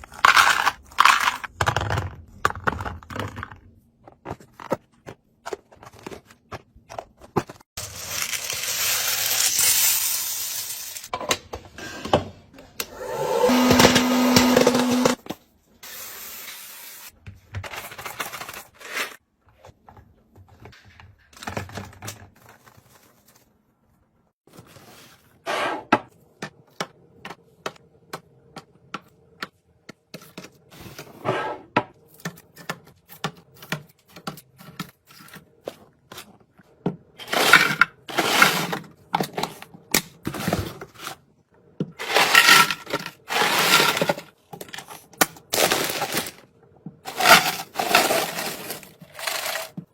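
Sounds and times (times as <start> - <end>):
groceries clicking and scraping: 0.0 - 10.1, 13.5 - 15.5, 17.2 - 23.6, 26.2 - 31.1, 32.0 - 49.9
packaging crinkling: 45.5 - 46.4, 47.1 - 49.7.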